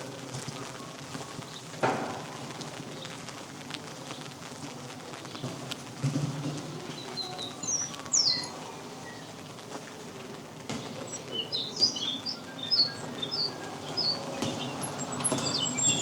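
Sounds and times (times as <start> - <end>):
songbird chirping: 6.7 - 9.4, 10.8 - 16.0.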